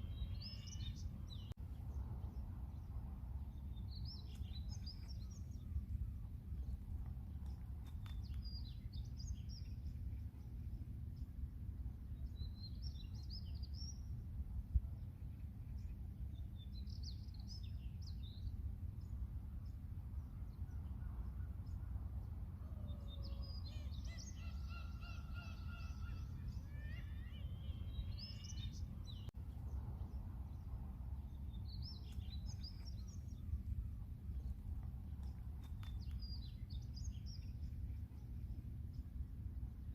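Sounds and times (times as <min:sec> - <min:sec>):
steady low rumble: 0:00.0 - 0:23.2, 0:25.8 - 0:39.9
seagulls calling: 0:23.9 - 0:28.6.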